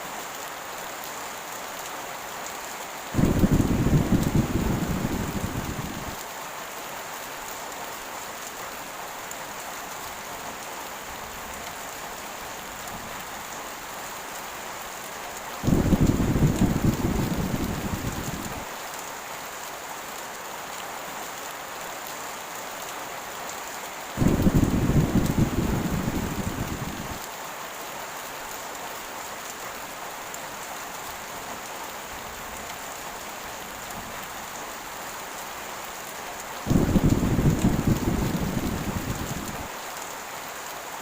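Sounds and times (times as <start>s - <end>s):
heavy rain falling: 0.0s - 41.0s
thunder rumbling: 3.2s - 6.2s, 15.6s - 18.7s, 24.2s - 27.2s, 36.7s - 39.7s.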